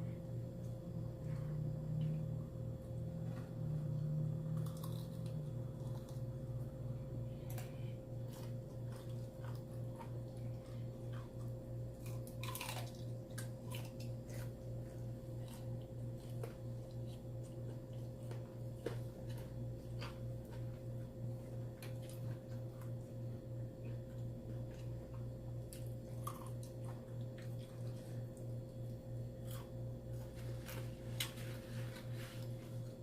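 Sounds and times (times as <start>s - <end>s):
steady pulsing low hum: 0.0s - 33.0s
close chewing and wet mouth sounds: 4.4s - 6.6s, 7.4s - 23.1s, 23.7s - 31.4s.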